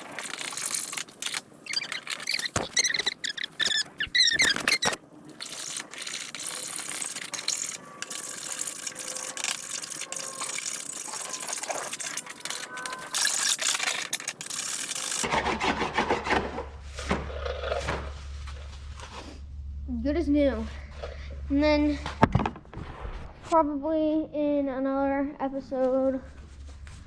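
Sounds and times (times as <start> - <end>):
steady low hum: 16.5 - 27.0.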